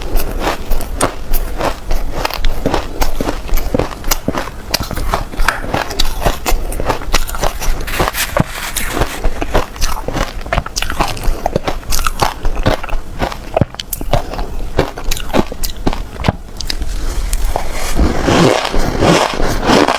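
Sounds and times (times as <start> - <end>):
crunching shaved ice: 0.0 - 19.9.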